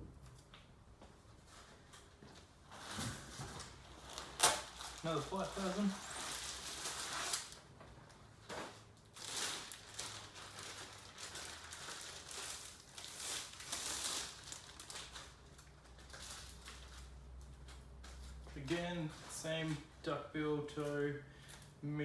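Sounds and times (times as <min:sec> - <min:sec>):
packaging crinkling and rustling: 0:02.7 - 0:18.2.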